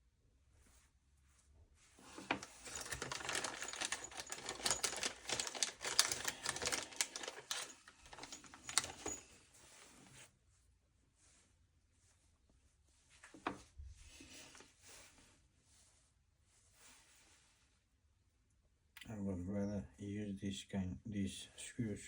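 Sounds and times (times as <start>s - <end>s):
small metal parts rattling: 2.2s - 9.3s.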